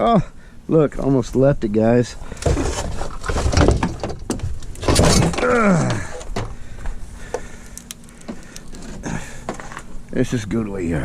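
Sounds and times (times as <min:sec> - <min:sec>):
scrap metal clatter: 0:04.8 - 0:05.4.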